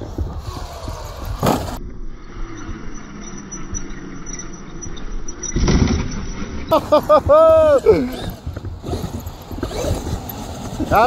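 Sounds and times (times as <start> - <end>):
rc car rumbling: 0.0 - 11.0.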